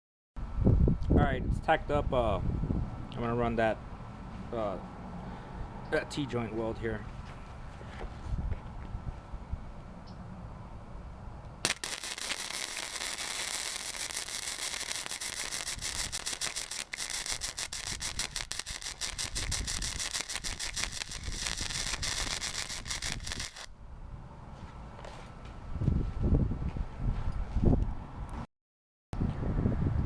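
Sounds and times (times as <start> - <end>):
welding arc crackling and sizzling: 11.6 - 23.7.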